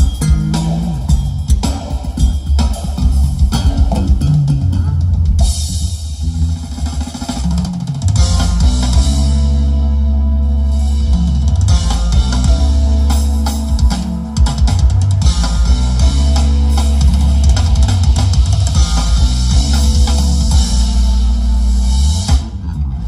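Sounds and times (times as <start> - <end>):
deep bass: 0.0 - 23.0
drum hits: 11.7 - 21.1.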